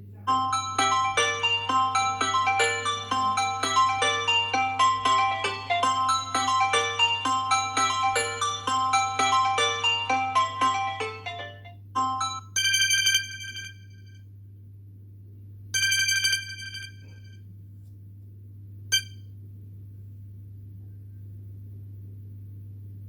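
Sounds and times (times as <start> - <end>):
bright electronic notification tone: 0.3 - 12.6
marimba-like ringtone melody: 0.3 - 13.4.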